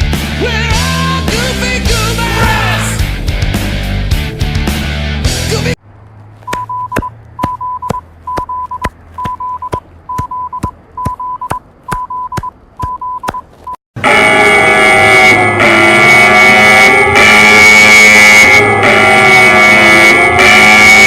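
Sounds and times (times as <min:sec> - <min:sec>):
loud rock music: 0:00.0 - 0:05.8
high alert beeps: 0:06.5 - 0:13.5.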